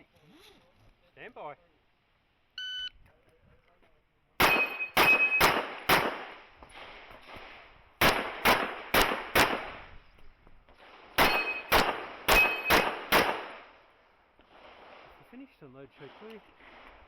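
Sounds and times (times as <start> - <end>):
handgun shots: 4.4 - 6.3, 8.0 - 9.7, 11.2 - 13.6
brief metallic ring: 4.5 - 5.4.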